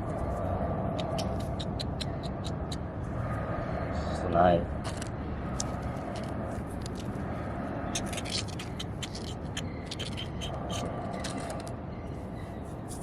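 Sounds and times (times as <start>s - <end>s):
scratching in sand: 12.6s - 13.0s.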